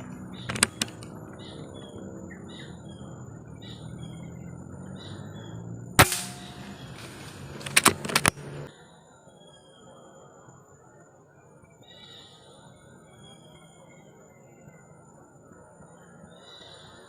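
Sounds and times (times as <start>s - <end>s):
sharp clicks: 0.0s - 1.4s, 6.0s - 8.7s
small birds chirping: 0.0s - 17.0s
air rifle firing crack: 6.0s - 8.5s.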